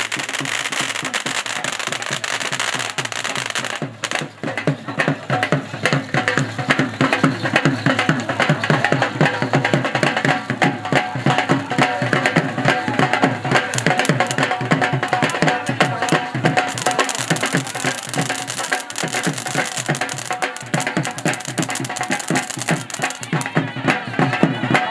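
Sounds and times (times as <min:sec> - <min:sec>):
fast hand drumming: 0:12.4 - 0:23.9.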